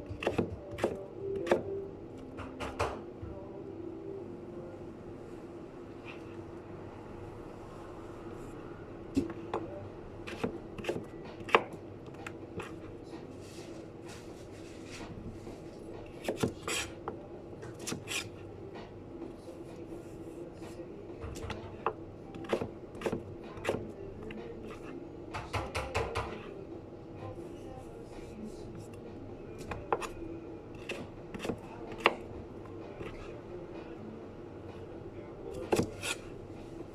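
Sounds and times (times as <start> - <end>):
steady background hum: 0.0 - 36.9.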